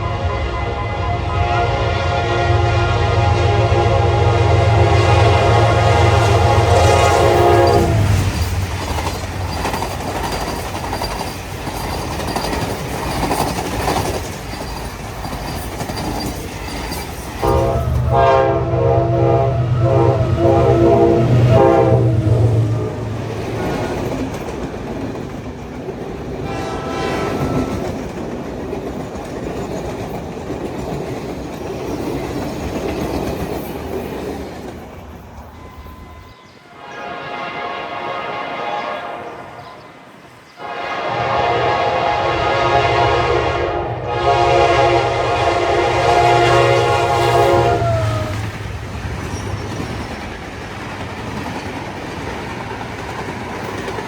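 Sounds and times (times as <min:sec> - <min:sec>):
train horn blasting: 0:00.0 - 0:08.4, 0:17.4 - 0:24.2, 0:26.4 - 0:28.0, 0:35.6 - 0:48.6
train rumble and rail clatter: 0:00.0 - 0:54.0.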